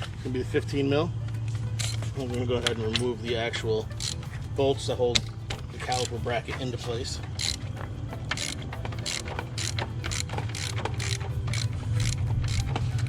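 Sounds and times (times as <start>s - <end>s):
steady low hum: 0.0s - 13.0s
socket ratchet clicking: 3.9s - 4.2s, 7.3s - 13.0s.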